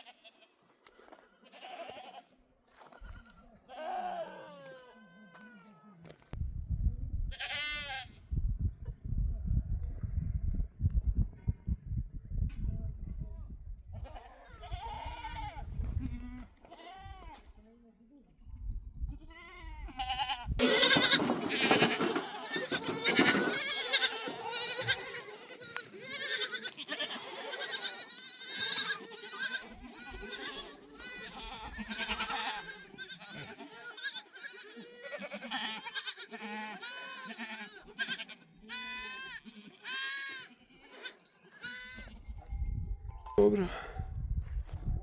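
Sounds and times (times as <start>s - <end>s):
goats bleating: 0.0s - 0.6s, 1.3s - 5.8s, 14.0s - 17.4s, 19.3s - 42.2s.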